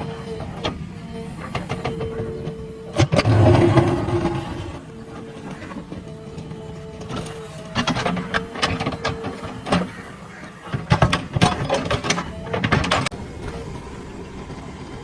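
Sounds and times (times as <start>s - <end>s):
diesel engine running: 3.2s - 5.0s.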